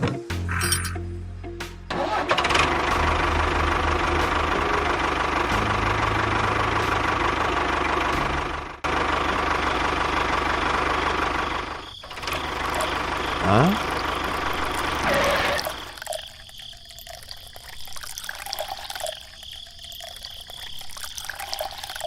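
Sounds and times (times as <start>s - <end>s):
small engine chugging: 2.0s - 16.4s.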